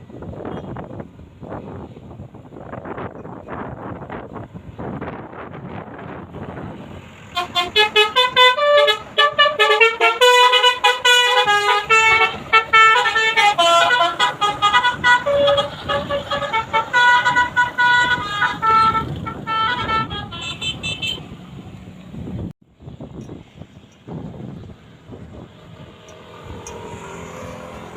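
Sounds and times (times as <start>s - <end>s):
road and vehicle noise: 0.0s - 27.9s
musical bus horn melody: 7.3s - 21.4s.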